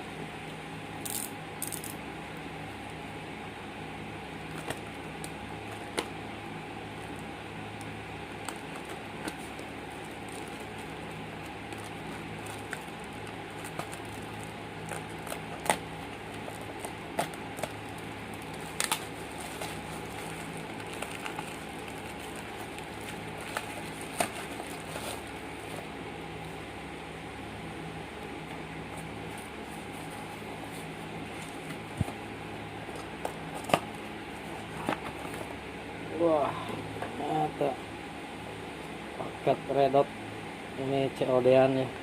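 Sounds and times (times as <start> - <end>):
steady fan-like hum: 0.0 - 42.0
packaging crinkling and tearing: 8.4 - 25.9.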